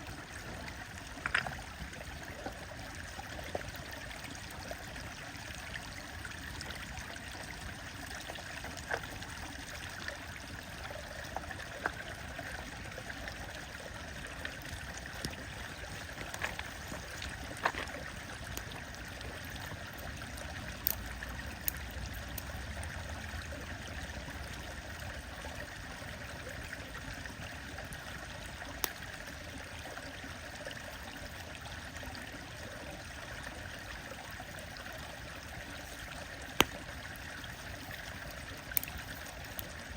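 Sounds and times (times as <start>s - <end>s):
stream water flowing: 0.0s - 39.9s
wood fire crackling and popping: 15.1s - 20.1s, 20.7s - 22.5s, 38.0s - 39.8s.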